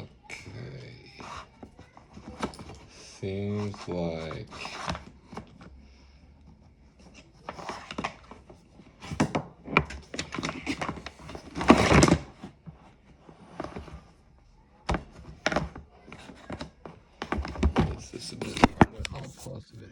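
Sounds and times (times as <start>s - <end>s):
scraping rustle: 1.0s - 5.5s
clicks and knocks of handling: 14.8s - 19.3s.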